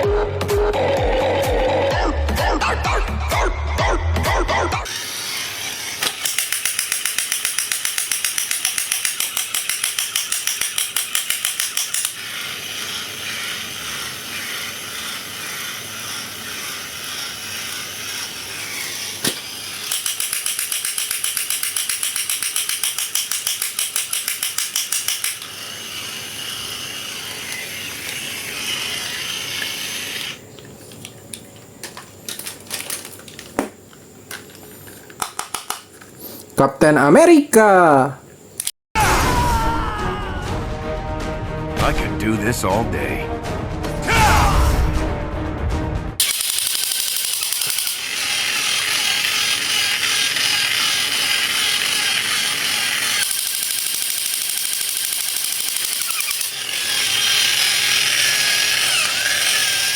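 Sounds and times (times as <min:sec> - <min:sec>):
steady whirring: 0:04.8 - 0:30.5, 0:46.2 - 0:59.9
rapid mechanical clicking: 0:06.0 - 0:28.8, 0:46.2 - 0:59.9.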